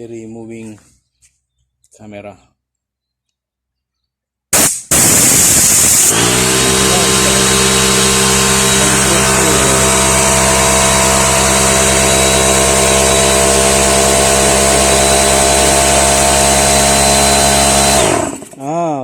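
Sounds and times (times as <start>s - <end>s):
air compressor running: 4.6s - 18.7s.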